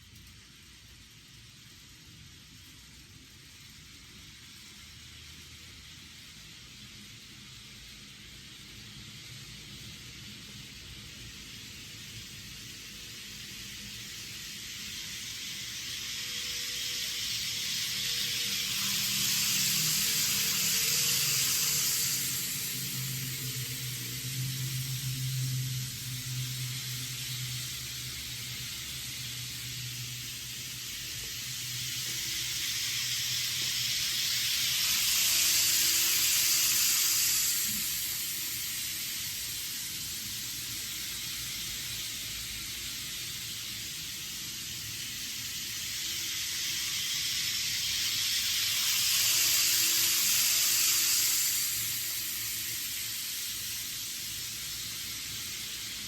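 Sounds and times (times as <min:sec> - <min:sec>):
model train running on track: 0:00.0 - 0:56.0.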